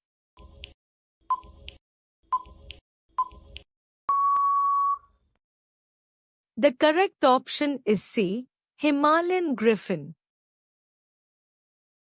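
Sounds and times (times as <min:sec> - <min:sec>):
countdown timer beeps: 0:02.3 - 0:05.0
long steady beep: 0:04.1 - 0:05.1.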